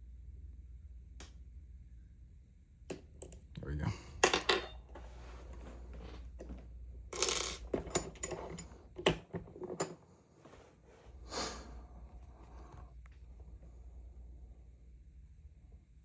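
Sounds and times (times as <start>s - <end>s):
handling rustles: 4.4s - 6.7s.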